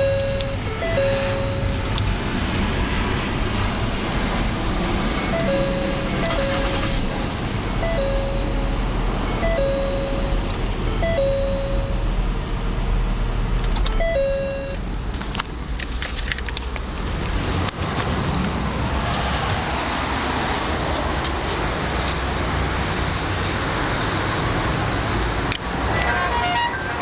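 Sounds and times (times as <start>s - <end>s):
car alarm two-note chirps: 0.0s - 1.8s, 5.4s - 6.9s, 7.8s - 12.1s, 14.0s - 14.8s
steady rushing noise: 0.4s - 9.5s.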